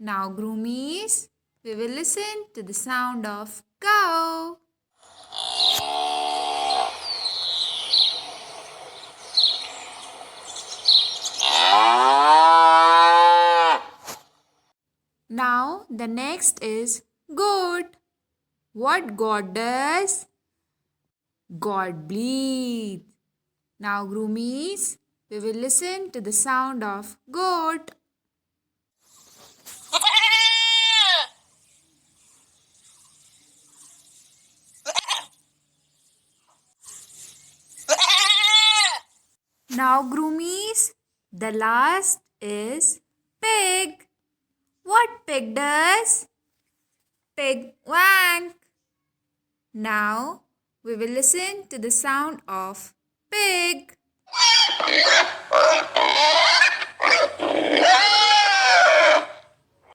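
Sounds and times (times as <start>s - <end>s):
steady outdoor hiss: 5.2s - 11.4s
cow mooing: 11.4s - 14.0s, 54.3s - 59.4s
goat bleating: 29.9s - 31.4s, 34.9s - 35.3s, 37.9s - 39.1s, 54.3s - 59.4s.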